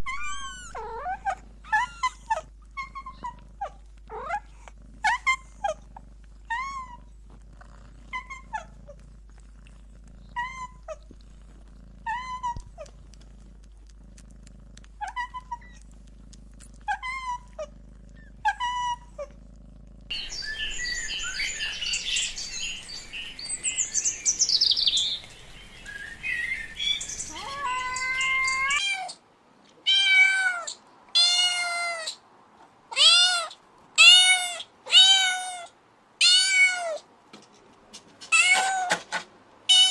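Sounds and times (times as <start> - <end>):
kittens mewing: 26.8 - 29.2.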